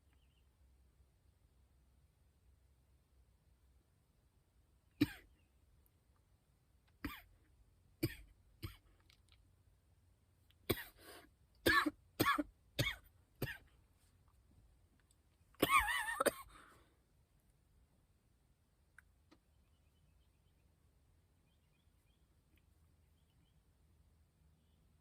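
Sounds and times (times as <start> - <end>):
man coughing: 5.0 - 5.3, 15.6 - 16.7.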